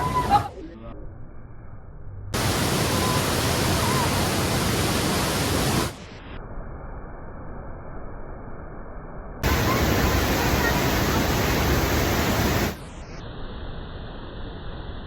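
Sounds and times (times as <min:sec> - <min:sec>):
waterfall rushing: 0:02.4 - 0:06.0, 0:09.4 - 0:12.8.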